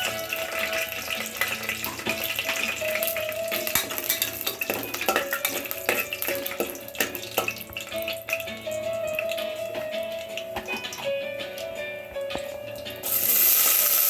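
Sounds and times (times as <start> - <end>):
background music with held notes: 0.0 - 14.0
food frying in a pan: 0.0 - 14.0
utensil clicking against pan: 1.6 - 8.4.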